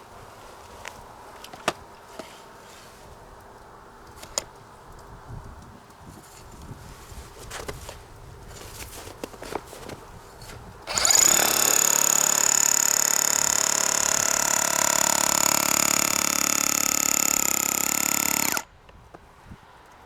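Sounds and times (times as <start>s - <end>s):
hammer drill rattling: 10.9s - 18.7s.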